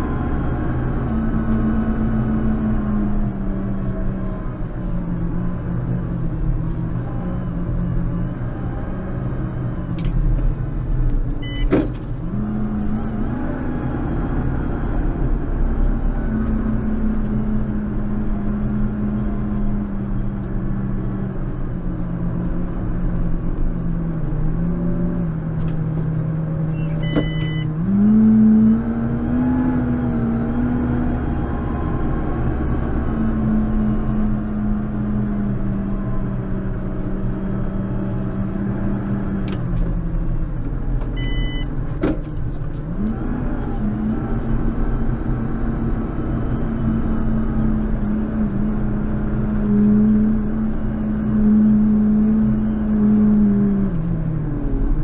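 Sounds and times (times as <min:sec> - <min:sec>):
short high beeps: 0:11.4 - 0:11.7, 0:26.7 - 0:27.7, 0:41.2 - 0:41.7.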